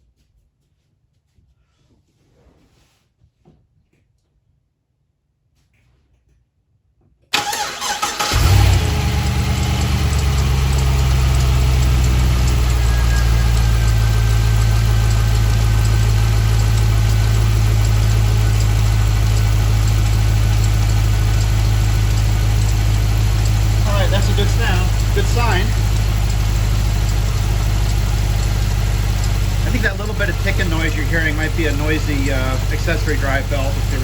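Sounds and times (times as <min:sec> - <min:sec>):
starter cranking engine: 0:07.3 - 0:34.0
car engine idling: 0:07.4 - 0:34.0
light engine ticking: 0:07.4 - 0:34.0.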